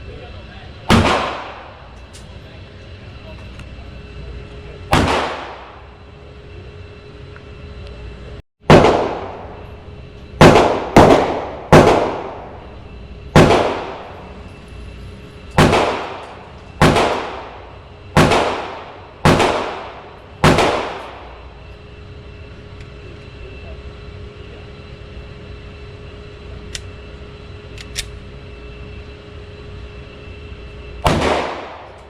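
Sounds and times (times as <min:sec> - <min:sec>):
pistol shots ringing: 0:00.9 - 0:01.8, 0:04.9 - 0:05.8, 0:08.7 - 0:09.5, 0:10.4 - 0:12.5, 0:13.3 - 0:14.2, 0:15.5 - 0:17.6, 0:18.2 - 0:21.3, 0:31.0 - 0:32.0.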